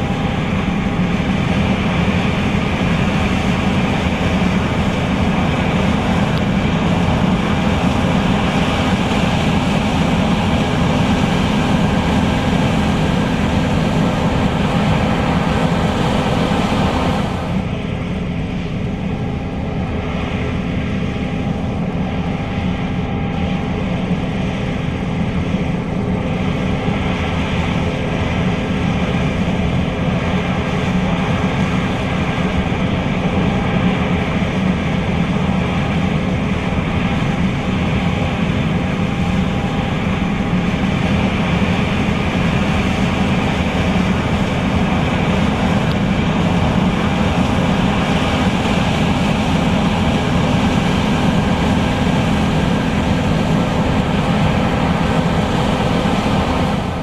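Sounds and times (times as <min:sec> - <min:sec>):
combine harvester engine drone: 0:00.0 - 0:57.0.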